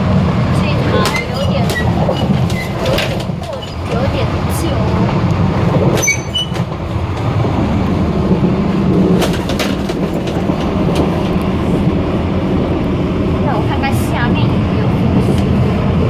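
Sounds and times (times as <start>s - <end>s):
train gangway rumble and rattle: 0.0s - 16.0s
high metallic squeaks: 0.7s - 4.2s, 6.0s - 6.8s.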